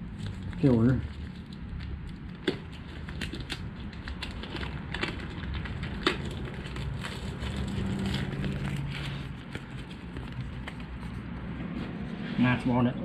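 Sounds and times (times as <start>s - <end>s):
packaging crinkling: 0.1s - 11.2s.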